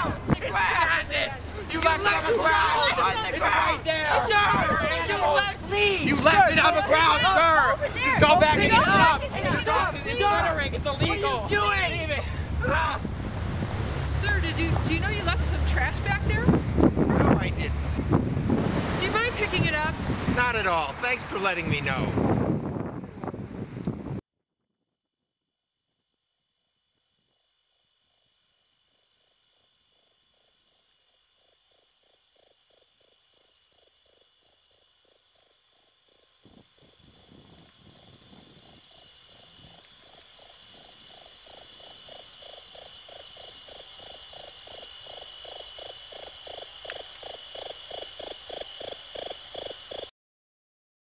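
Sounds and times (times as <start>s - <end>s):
rhythmic cricket chirping: 25.5s - 50.1s.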